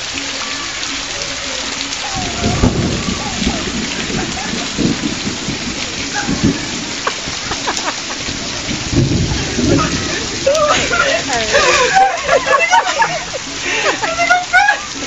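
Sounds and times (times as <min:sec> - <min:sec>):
heavy rain pouring: 0:00.0 - 0:15.0
low thumps: 0:02.2 - 0:07.6, 0:08.2 - 0:11.0.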